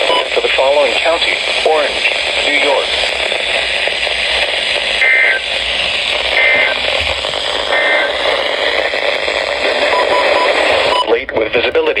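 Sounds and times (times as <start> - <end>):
radio static hiss: 0.0 - 12.0
two-tone data bursts chirping: 5.0 - 5.6, 6.3 - 6.9, 7.7 - 8.2.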